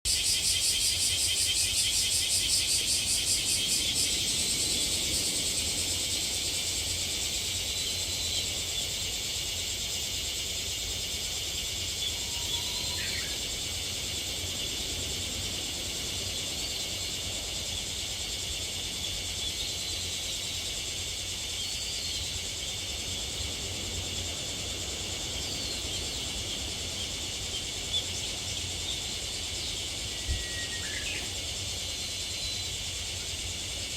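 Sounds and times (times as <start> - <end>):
cicadas singing: 0.0 - 33.9.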